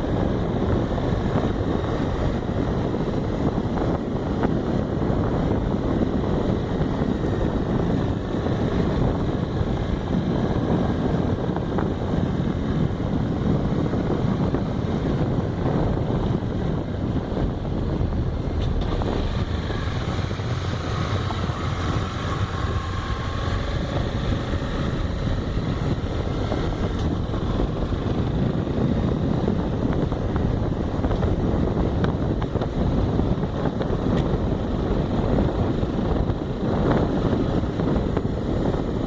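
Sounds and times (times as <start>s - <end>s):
motorcycle engine running: 0.0s - 39.0s
wind on microphone: 0.0s - 39.0s.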